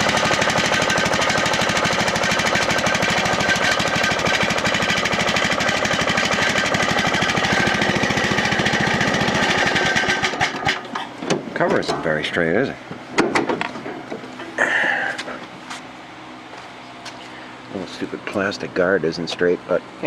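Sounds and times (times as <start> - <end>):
lawn mower engine running: 0.0 - 12.9.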